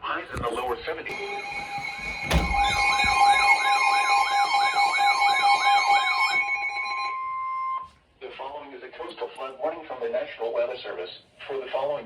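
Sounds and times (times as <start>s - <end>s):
steady high alarm beep: 1.1s - 7.9s
siren yelping: 1.1s - 8.0s.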